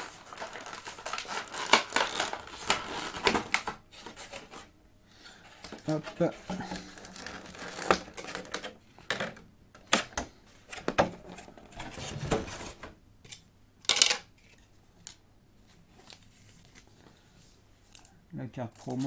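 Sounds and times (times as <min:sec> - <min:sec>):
rustling of packaged cards: 0:00.0 - 0:04.7, 0:05.4 - 0:09.1, 0:14.4 - 0:19.0.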